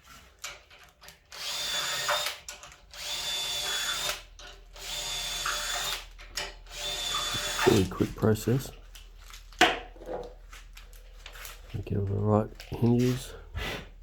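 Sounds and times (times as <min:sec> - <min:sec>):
power drill drilling into wood: 0:01.4 - 0:02.4, 0:03.0 - 0:06.1, 0:06.7 - 0:07.9.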